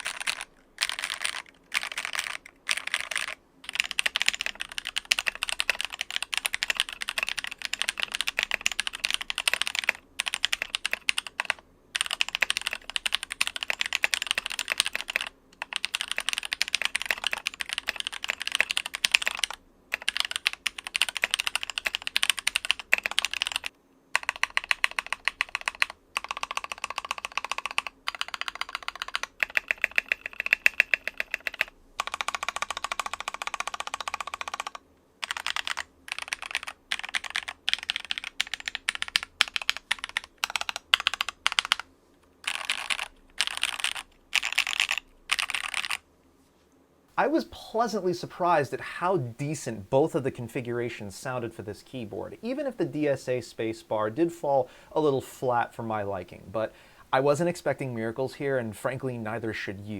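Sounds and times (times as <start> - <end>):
fast mechanical keyboard typing: 0.0 - 46.0.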